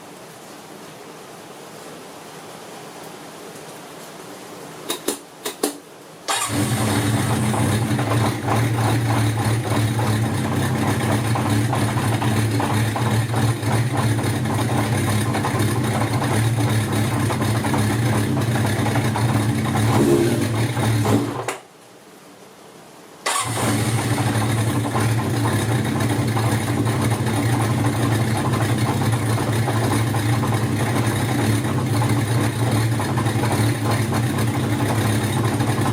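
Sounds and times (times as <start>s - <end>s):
motorcycle engine running: 6.3s - 21.5s, 23.3s - 35.9s.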